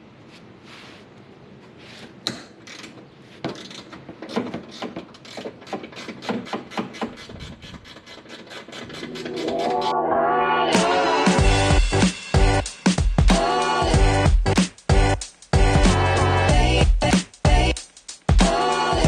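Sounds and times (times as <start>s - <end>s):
music: 9.3s - 19.0s.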